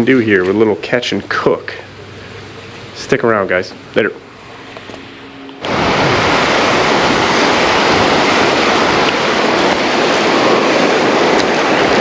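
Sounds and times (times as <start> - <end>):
ocean surf washing on beach: 5.6 - 12.0
wind on microphone: 5.7 - 12.0.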